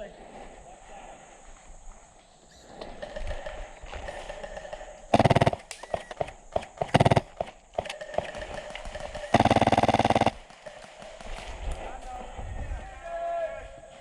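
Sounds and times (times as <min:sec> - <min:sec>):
airsoft gun full-auto bursts: 0:05.1 - 0:11.4.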